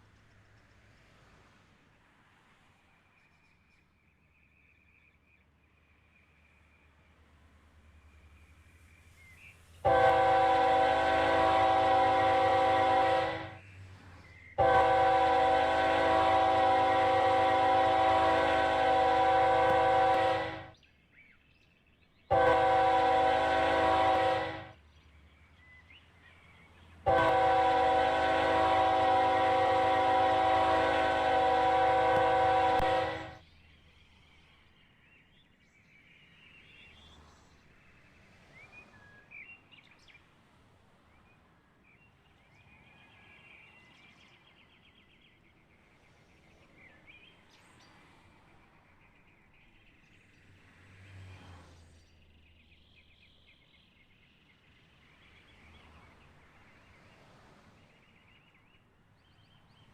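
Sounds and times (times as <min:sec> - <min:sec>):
train air horn blasts: 0:09.8 - 0:13.6, 0:14.6 - 0:20.7, 0:22.3 - 0:24.8, 0:27.0 - 0:33.4.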